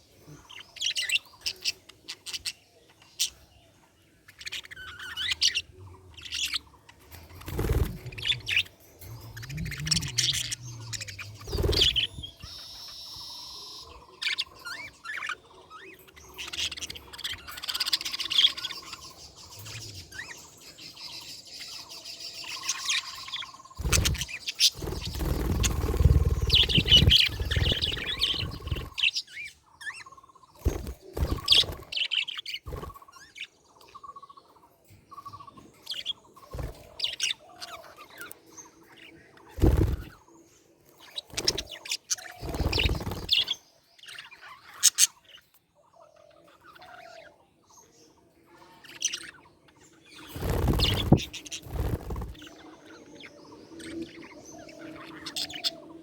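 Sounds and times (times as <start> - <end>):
low rumbling noise: 7.8 - 12.4.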